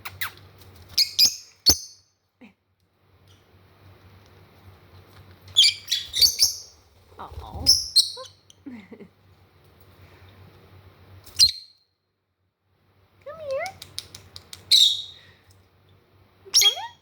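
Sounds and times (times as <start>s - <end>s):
parrots squawking: 16.5s - 17.0s.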